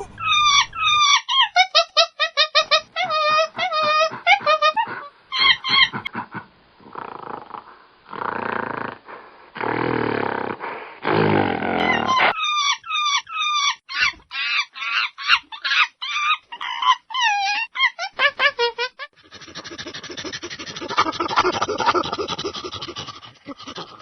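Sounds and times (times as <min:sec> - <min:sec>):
monkey high wavering cries: 0:00.0 - 0:06.1, 0:11.8 - 0:19.2
monkey roaring breaths: 0:03.6 - 0:12.3, 0:19.2 - 0:24.0.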